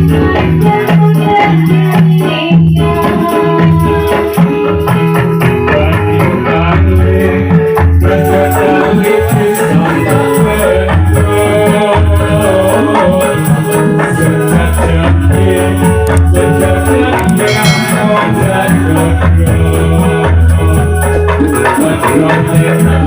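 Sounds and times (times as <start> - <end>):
steady drumming: 0.0 - 23.0
shaken rattle rhythm: 8.1 - 23.0.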